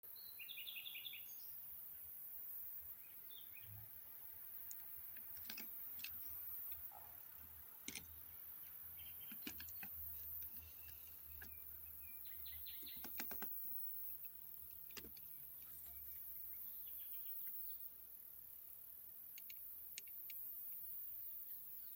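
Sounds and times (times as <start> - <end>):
forest ambience: 0.0 - 21.9
sharp clicks: 4.6 - 11.6, 12.8 - 15.7, 18.6 - 20.5
short rapid bird trills: 8.9 - 13.7.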